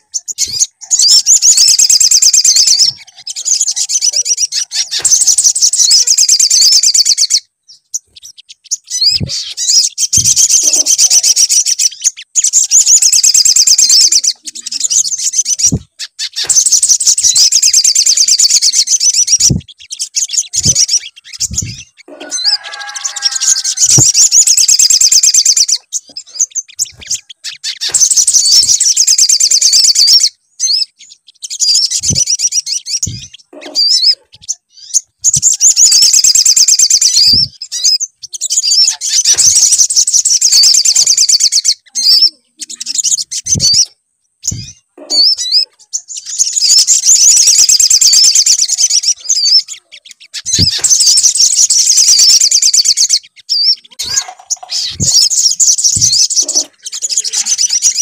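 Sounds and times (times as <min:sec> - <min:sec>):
bird song trills: 0:00.0 - 0:58.0
lower warbling bird call: 0:08.7 - 0:30.9, 0:31.6 - 0:58.0
short low thumps: 0:21.4 - 0:21.8.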